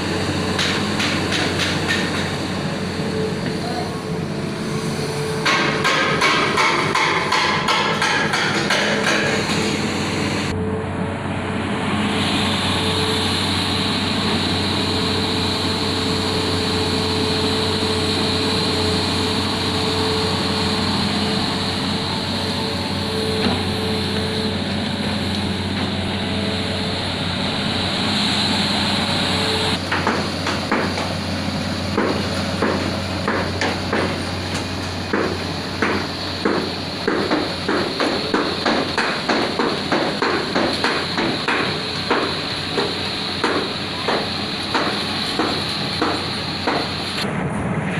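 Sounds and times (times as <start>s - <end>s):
excavator diesel engine running: 0.0s - 47.9s
sharp knocks: 5.4s - 9.6s, 29.9s - 31.1s, 31.9s - 34.2s, 35.1s - 46.9s.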